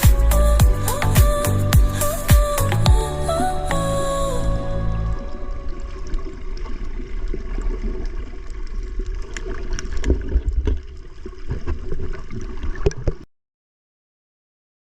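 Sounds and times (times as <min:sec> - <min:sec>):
seawater splashing and gurgling: 0:05.2 - 0:13.2.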